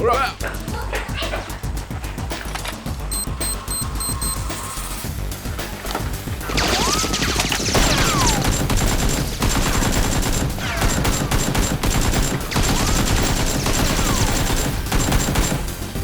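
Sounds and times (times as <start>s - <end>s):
rapid blaster gunfire: 6.4s - 16.0s.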